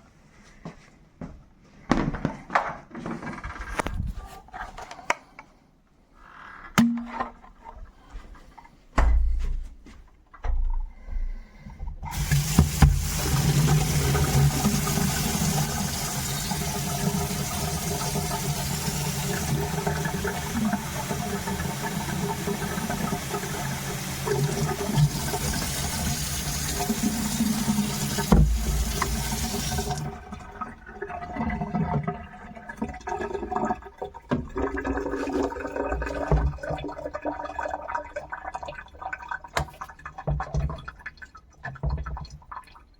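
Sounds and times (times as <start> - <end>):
tap water running into sink: 12.1 - 41.1.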